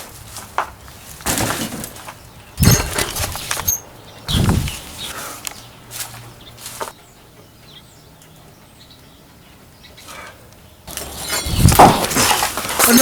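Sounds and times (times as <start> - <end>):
knife landing with a clatter: 2.6 - 4.7.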